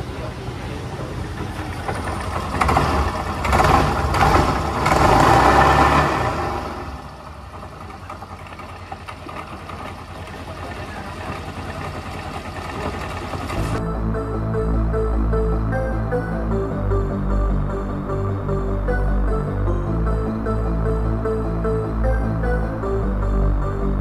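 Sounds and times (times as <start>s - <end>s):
scooter engine running: 0.0s - 13.9s.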